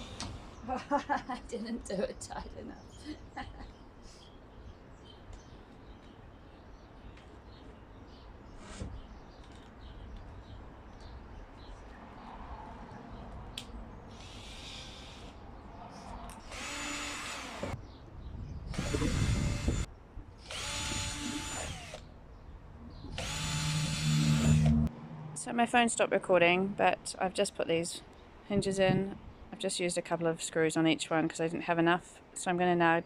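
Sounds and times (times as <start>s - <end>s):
power drill whining: 16.5s - 17.8s, 18.8s - 22.0s, 23.2s - 24.9s.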